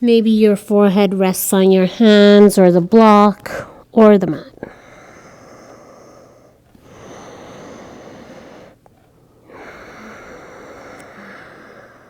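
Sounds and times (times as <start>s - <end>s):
woman breathing deeply: 3.5s - 12.0s.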